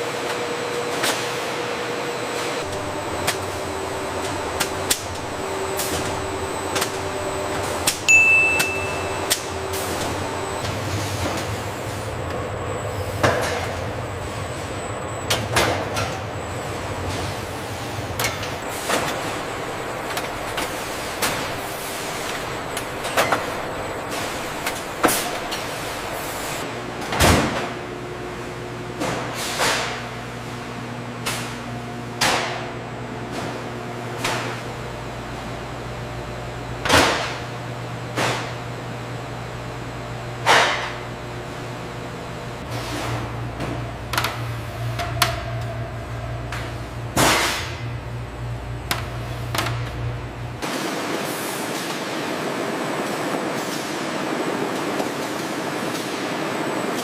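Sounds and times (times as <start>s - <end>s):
machinery hum: 0.0s - 57.0s
low hum: 2.6s - 26.4s
sharp metal clanks: 8.1s - 9.4s
high electronic beep: 8.1s - 10.6s.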